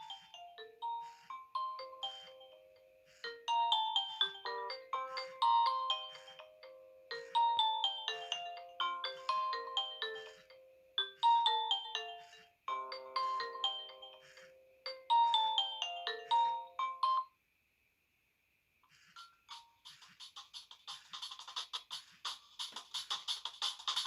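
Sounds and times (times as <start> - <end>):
phone ringtone melody: 0.0 - 17.3.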